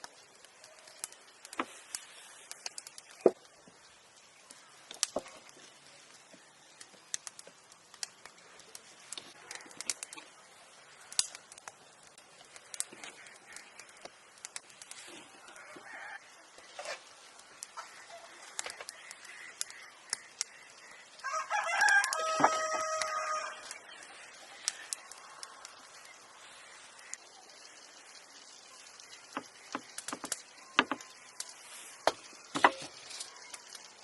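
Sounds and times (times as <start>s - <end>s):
sharp clicks and knocks: 29.3s - 31.0s.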